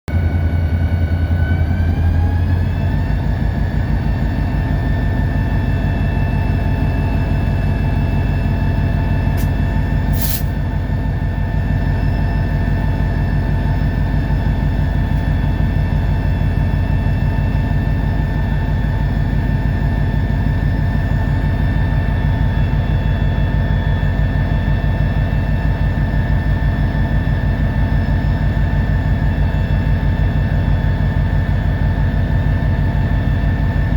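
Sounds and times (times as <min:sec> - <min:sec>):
diesel locomotive engine running: 0:00.1 - 0:33.9
short hiss: 0:10.2 - 0:10.5.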